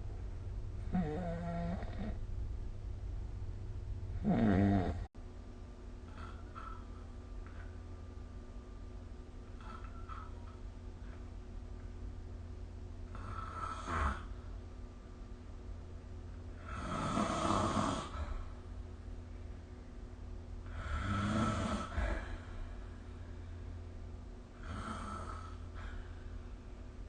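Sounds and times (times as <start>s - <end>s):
steady low hum: 0.0s - 27.0s
person snoring: 0.8s - 2.2s, 4.2s - 5.1s, 13.1s - 14.3s, 16.6s - 18.4s, 20.6s - 22.5s, 24.6s - 26.0s.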